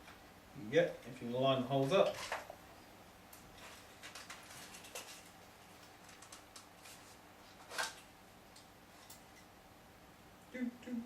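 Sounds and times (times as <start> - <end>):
plastic parts clicking and rattling: 3.6 - 6.7.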